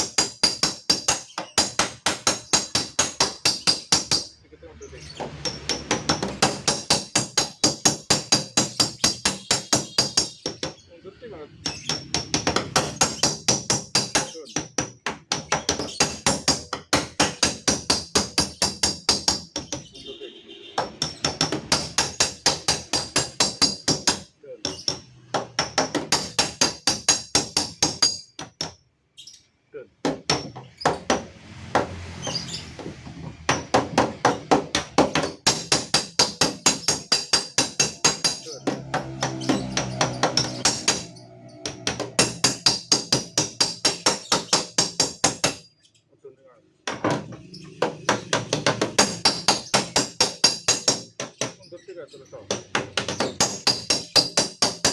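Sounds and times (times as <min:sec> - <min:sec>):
hammer tapping sheet metal: 0:00.0 - 0:04.3, 0:05.2 - 0:10.8, 0:11.6 - 0:19.9, 0:20.8 - 0:28.8, 0:30.0 - 0:45.6, 0:46.9 - 0:51.6, 0:52.4 - 0:54.9
hammer blows on metal panel: 0:30.1 - 0:45.6.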